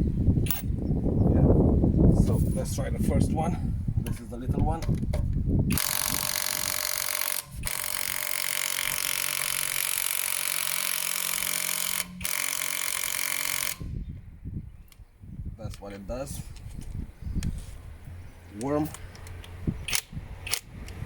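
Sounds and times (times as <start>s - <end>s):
impact wrench hammering: 5.7s - 13.8s.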